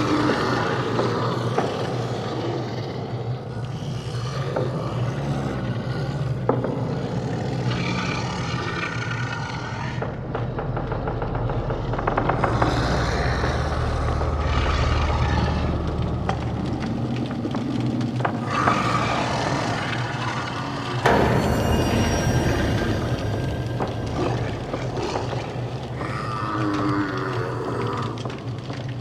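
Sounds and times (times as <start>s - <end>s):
grinding mechanical textures: 5.5s - 29.0s
low rumbling drone: 7.7s - 29.0s.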